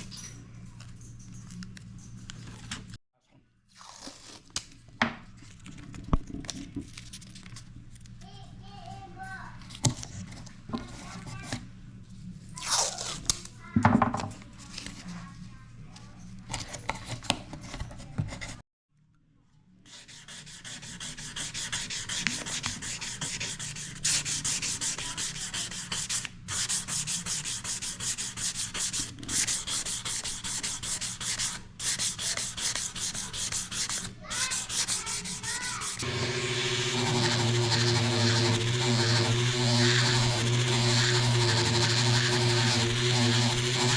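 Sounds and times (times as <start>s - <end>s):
hand sanding strokes: 19.9s - 43.9s.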